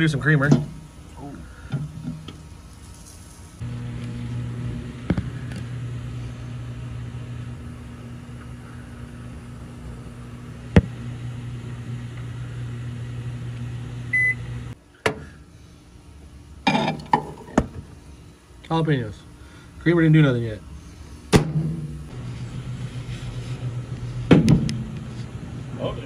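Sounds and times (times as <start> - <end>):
microwave oven humming: 3.6 - 15.5, 21.3 - 26.0
microwave beep: 14.0 - 14.7.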